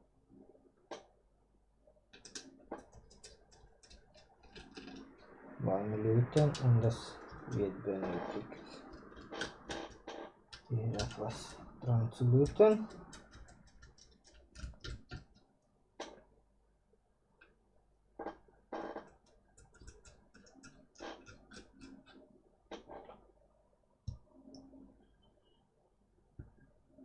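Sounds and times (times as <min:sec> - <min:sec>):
small tools clicking and tapping: 0:02.1 - 0:05.0, 0:12.4 - 0:16.2, 0:19.0 - 0:22.2.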